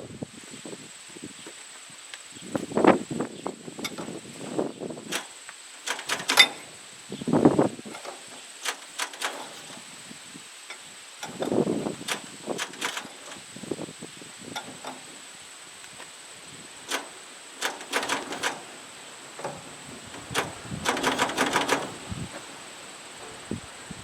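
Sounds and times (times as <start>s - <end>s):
knocks and clatters on metal: 5.1s - 6.8s, 7.9s - 9.8s, 10.7s - 13.5s, 14.5s - 15.2s, 16.8s - 22.6s.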